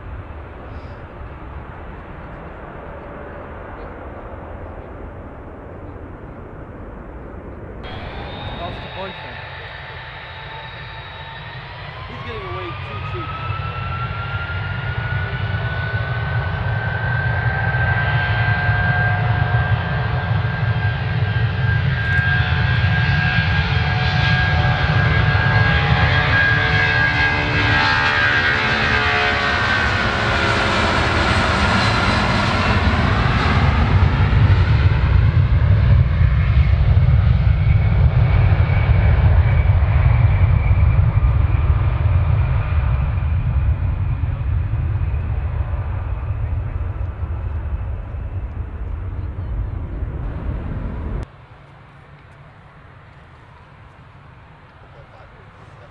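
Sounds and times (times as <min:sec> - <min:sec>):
low rumble: 0:00.0 - 0:21.9, 0:32.1 - 0:51.3
jet engine whine: 0:00.0 - 0:55.9.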